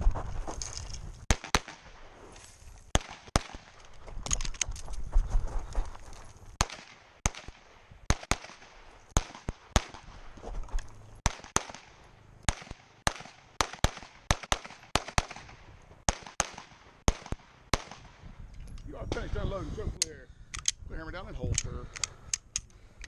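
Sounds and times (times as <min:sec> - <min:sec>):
pistol shots: 0:01.3 - 0:02.1, 0:02.9 - 0:03.9, 0:06.6 - 0:10.2, 0:11.2 - 0:18.2.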